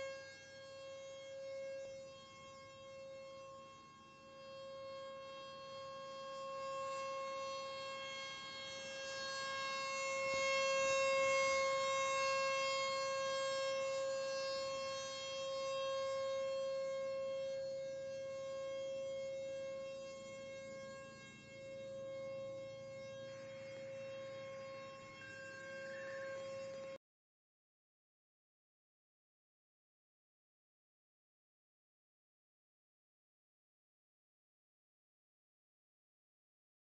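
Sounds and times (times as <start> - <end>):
warning siren steady tone: 0.0 - 27.0.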